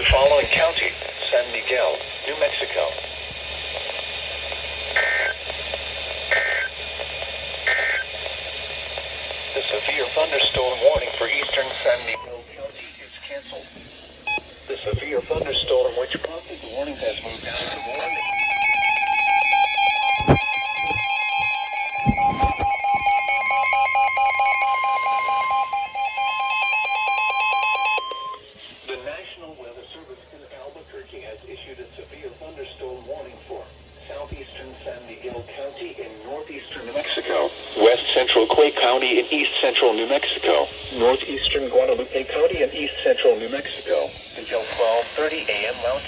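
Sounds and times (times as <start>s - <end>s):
steady alarm tone: 0.0s - 28.6s, 42.1s - 46.0s
radio hiss: 0.0s - 46.0s
rapid electronic alert beeping: 14.2s - 14.9s, 17.5s - 28.4s
warbling digital data bursts: 14.2s - 28.4s.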